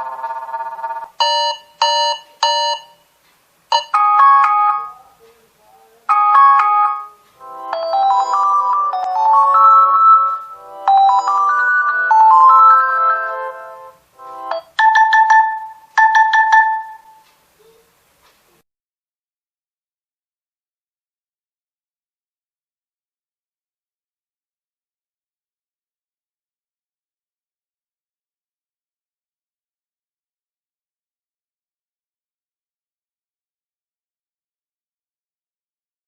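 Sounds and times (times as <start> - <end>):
phone ringtone melodies: 0.0 - 3.0, 3.7 - 5.1, 6.1 - 17.2.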